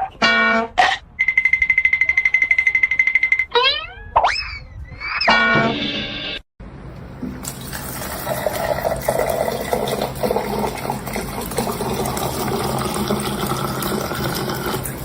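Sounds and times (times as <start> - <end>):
water running: 7.1 - 15.0.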